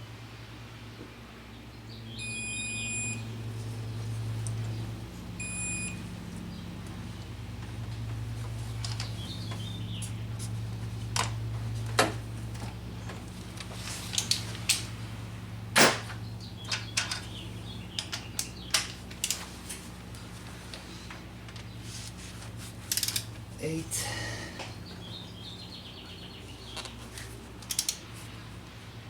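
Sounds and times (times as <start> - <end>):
steady low hum: 0.0 - 29.0
tools clicking and knocking: 22.9 - 23.3, 27.6 - 28.0.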